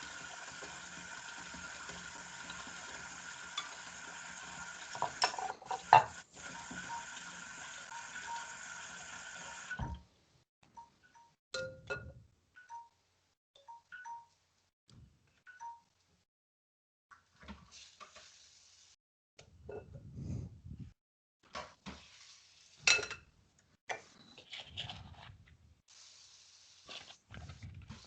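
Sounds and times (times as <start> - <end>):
utensils and pans clattering: 5.0 - 6.2.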